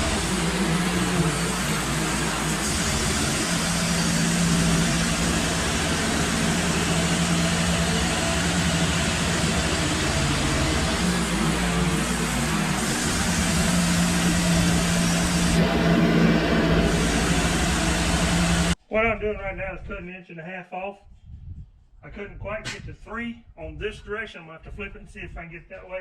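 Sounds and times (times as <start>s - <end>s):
band sawmill cutting log: 0.0s - 18.8s.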